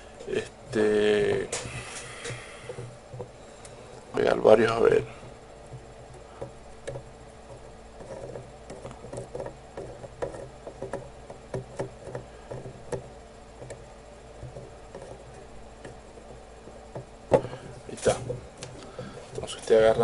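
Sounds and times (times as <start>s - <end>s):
faint steady hum: 0.0s - 20.0s.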